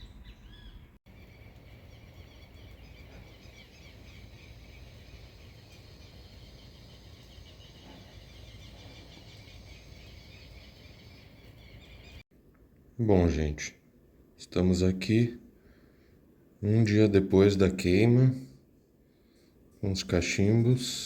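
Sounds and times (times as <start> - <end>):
small birds chirping: 0.0 - 12.2.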